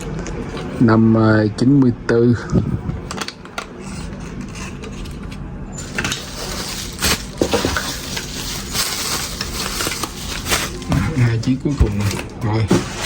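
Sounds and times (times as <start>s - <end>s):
packaging rustling: 3.9s - 13.0s.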